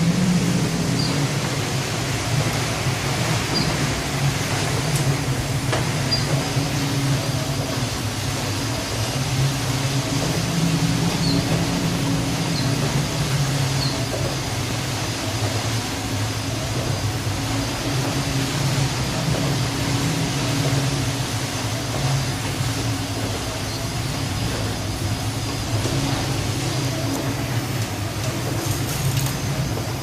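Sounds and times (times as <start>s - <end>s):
low mechanical drone: 0.0s - 30.0s.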